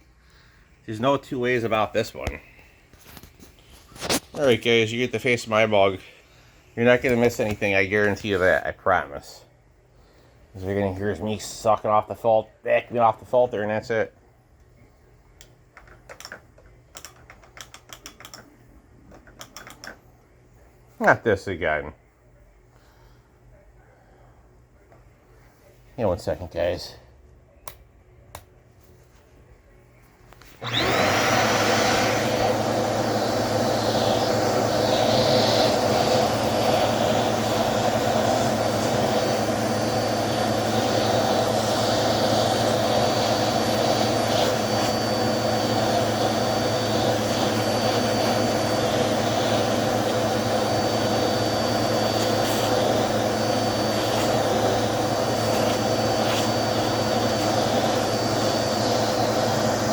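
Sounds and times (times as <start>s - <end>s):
vacuum cleaner motor whining: 30.5s - 59.9s.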